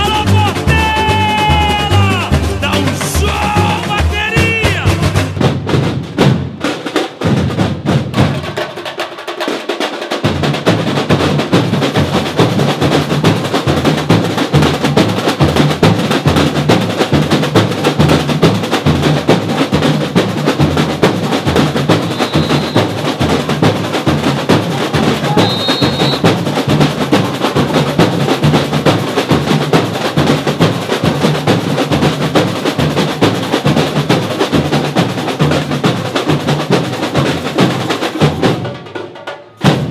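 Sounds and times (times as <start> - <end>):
drums and hand percussion: 0.0 - 39.9.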